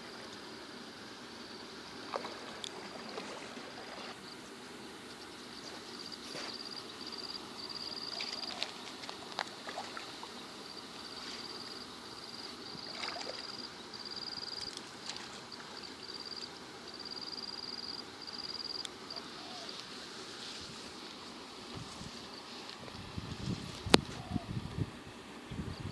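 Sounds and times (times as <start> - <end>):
water trickling and sloshing: 1.9 - 4.4, 7.6 - 16.5.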